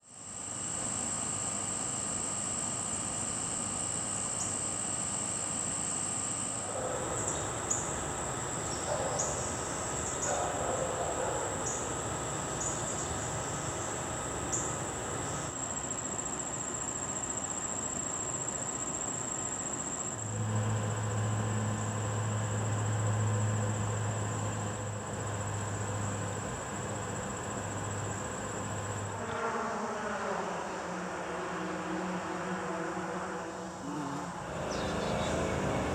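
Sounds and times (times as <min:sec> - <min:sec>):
insect chirps: 0:06.6 - 0:29.2
insects trilling: 0:06.6 - 0:29.2, 0:34.3 - 0:35.9
bee wings buzzing: 0:06.7 - 0:15.5, 0:34.4 - 0:35.9.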